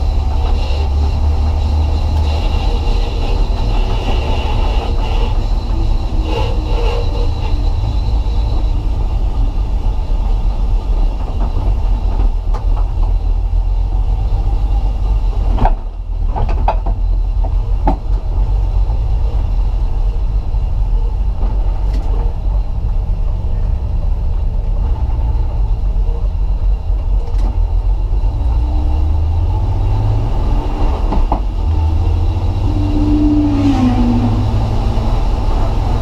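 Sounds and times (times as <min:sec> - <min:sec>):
car engine rumble: 0:00.0 - 0:36.0
road noise: 0:00.0 - 0:36.0.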